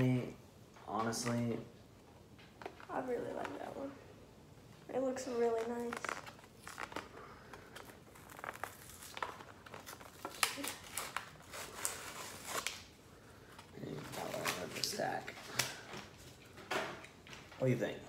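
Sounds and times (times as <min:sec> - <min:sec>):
plastic and cardboard crinkling: 0:05.3 - 0:17.7.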